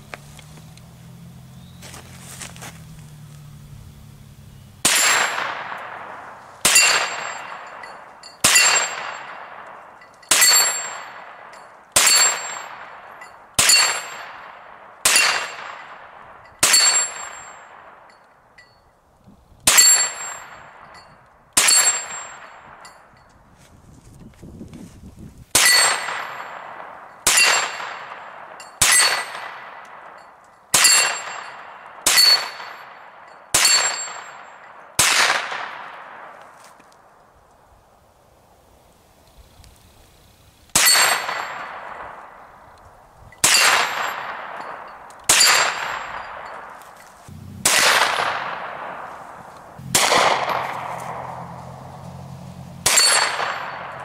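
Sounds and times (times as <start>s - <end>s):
rifle shots: 4.8s - 18.0s, 25.5s - 36.4s, 43.4s - 46.7s, 47.3s - 51.9s, 52.8s - 54.0s
metallic ring: 6.7s - 14.4s, 16.4s - 19.0s, 19.8s - 23.4s, 25.6s - 29.5s, 30.1s - 34.9s, 43.2s - 54.0s.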